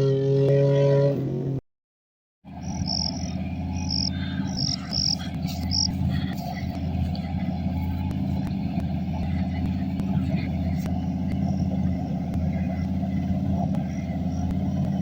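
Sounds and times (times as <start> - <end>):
steady low rumble: 2.5 - 15.0
insects chirping: 2.6 - 8.1.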